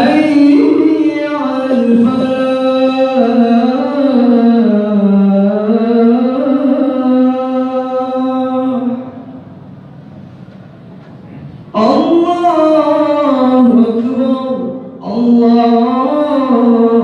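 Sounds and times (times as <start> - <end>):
man singing call to prayer: 0.0 - 9.4, 11.7 - 17.0.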